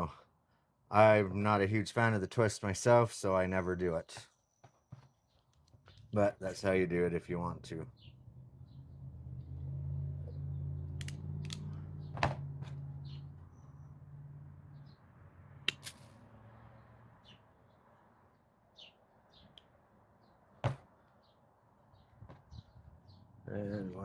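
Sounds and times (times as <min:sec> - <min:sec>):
crimping tool clicks: 0:11.0 - 0:11.8, 0:15.7 - 0:16.1.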